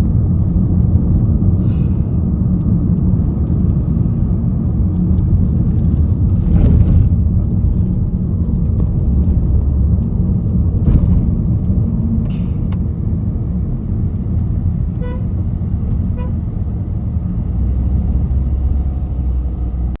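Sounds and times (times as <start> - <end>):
road traffic rumble: 0.0 - 20.0
car horn toots: 15.0 - 15.3, 16.1 - 16.4.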